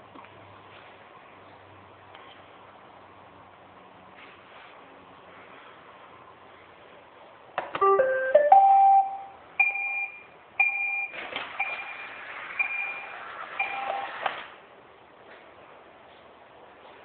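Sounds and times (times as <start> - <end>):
robot vacuum electronic beeps: 8.6 - 14.3.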